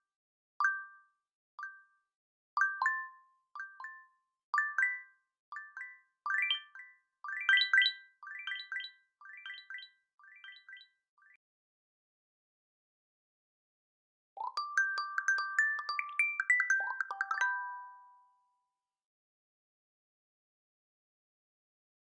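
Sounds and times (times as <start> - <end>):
bell-like ringtone tune: 2.6 - 11.4, 14.4 - 18.5.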